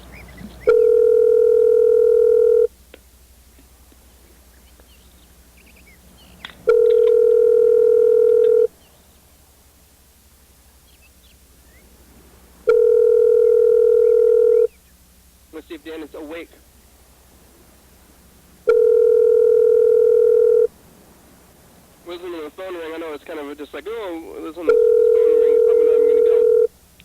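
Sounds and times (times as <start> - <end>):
telephone ringback tone: 0.7 - 2.7, 6.7 - 8.7, 12.7 - 14.7, 18.7 - 20.7, 24.7 - 26.7.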